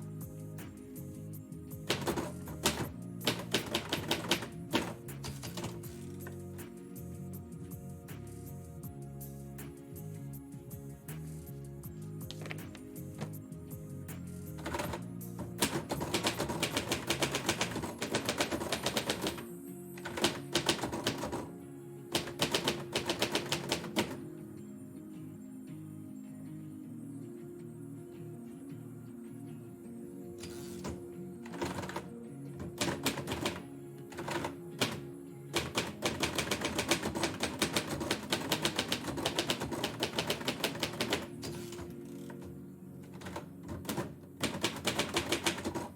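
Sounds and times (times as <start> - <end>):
soft instrumental music: 0.0 - 45.9
typewriter keys clicking: 1.9 - 6.4, 14.6 - 19.4, 20.0 - 21.5, 22.1 - 24.2, 30.4 - 42.5, 43.1 - 45.9.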